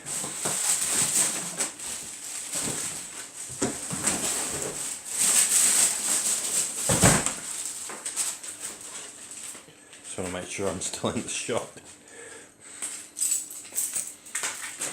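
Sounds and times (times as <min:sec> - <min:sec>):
packaging rustling and scraping: 0:00.0 - 0:09.7.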